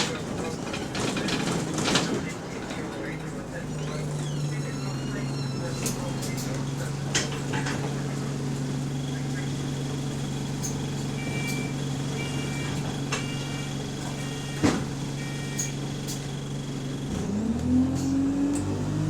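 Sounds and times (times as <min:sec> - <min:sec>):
diesel bus engine: 0:00.0 - 0:19.0
short high beeps: 0:11.2 - 0:14.6.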